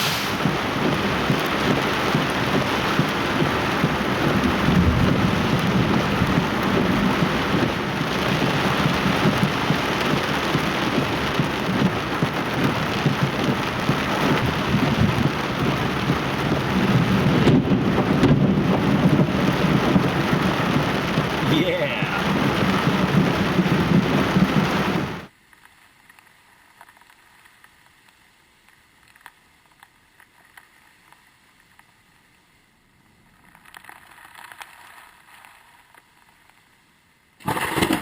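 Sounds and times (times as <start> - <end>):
heavy rain pouring: 0.0 - 25.3
rolling thunder: 0.1 - 25.3.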